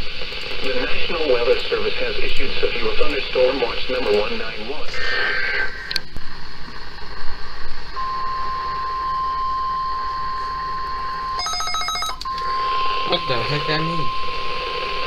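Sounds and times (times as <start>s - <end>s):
radio hiss: 0.0s - 15.0s
weather radio alert tone: 8.0s - 15.0s.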